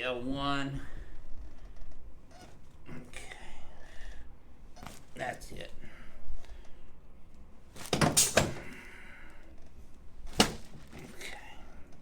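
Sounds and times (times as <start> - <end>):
thuds: 7.7 - 8.9, 10.2 - 11.3.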